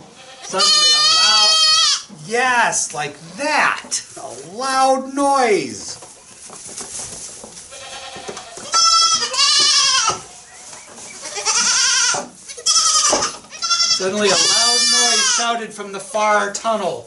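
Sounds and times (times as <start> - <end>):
goat bleating: 0.0 - 2.1, 7.7 - 10.2, 11.2 - 15.5.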